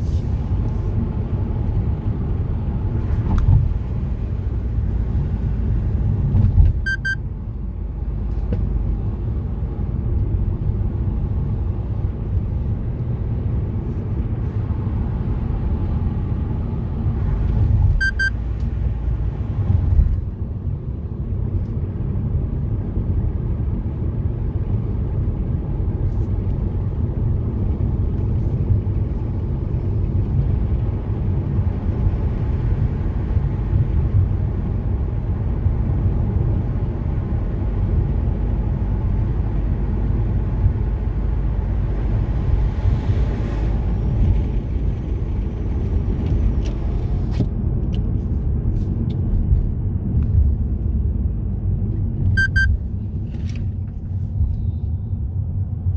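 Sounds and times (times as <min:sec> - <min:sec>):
car road and engine rumble: 0:00.0 - 0:55.9
short high double beep: 0:06.9 - 0:07.2, 0:18.0 - 0:18.4, 0:52.4 - 0:52.8.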